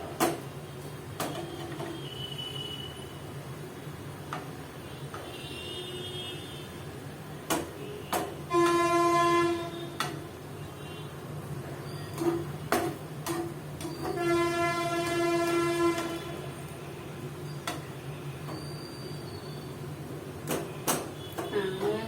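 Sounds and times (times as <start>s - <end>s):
horn blasts: 8.5s - 10.0s, 14.1s - 16.6s.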